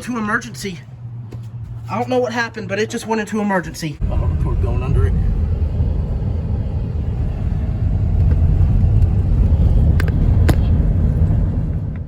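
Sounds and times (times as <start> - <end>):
car road rumble from inside: 4.0 - 12.0.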